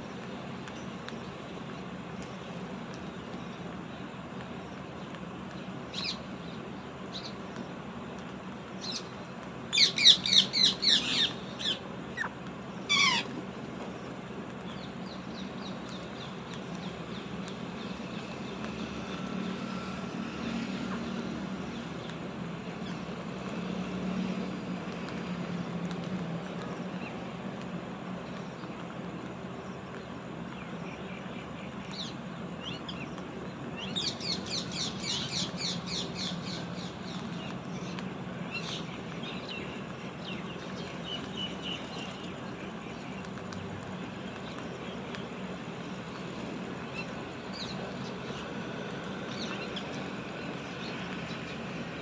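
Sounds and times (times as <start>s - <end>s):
low background hum: 0.0s - 52.0s
parrot calling: 12.9s - 13.3s.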